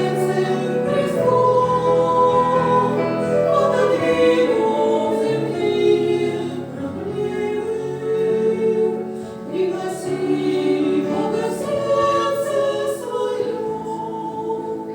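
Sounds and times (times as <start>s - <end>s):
church choir singing a hymn: 0.0s - 14.9s.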